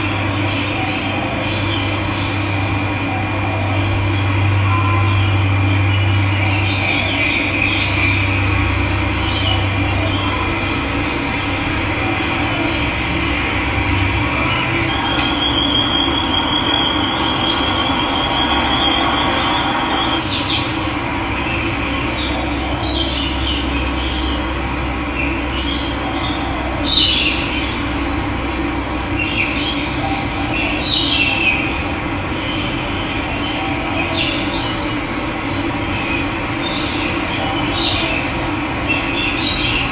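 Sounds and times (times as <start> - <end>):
high wavering note: 3.2 - 20.9
bird calls: 14.3 - 24.5.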